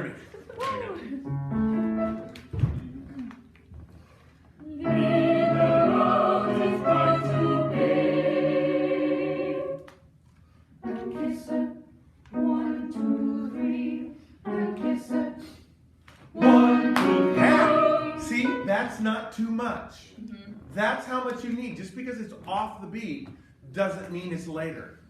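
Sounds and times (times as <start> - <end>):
choir singing unaccompanied: 4.6 - 9.9, 10.8 - 15.4, 16.3 - 18.6.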